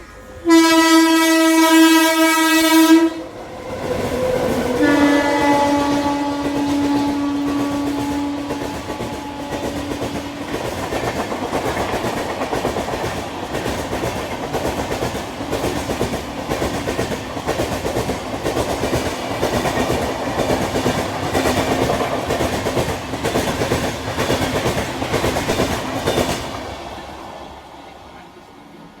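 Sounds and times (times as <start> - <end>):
train coaches rushing by: 0.0 - 29.0
train horn: 0.2 - 3.4, 4.1 - 10.8
train wheels clickety-clack: 3.7 - 27.2.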